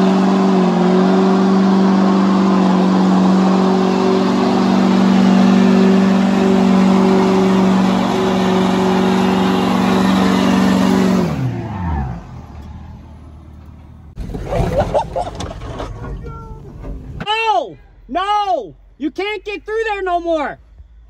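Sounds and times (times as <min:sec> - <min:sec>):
car engine revving high: 0:00.0 - 0:12.8.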